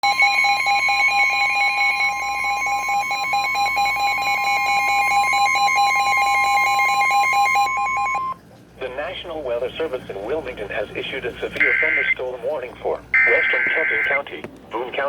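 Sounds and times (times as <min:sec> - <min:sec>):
high-pitched alarm tone: 0:00.0 - 0:08.4, 0:13.2 - 0:14.1
rapidly pulsing beep: 0:00.0 - 0:08.4, 0:13.2 - 0:14.2.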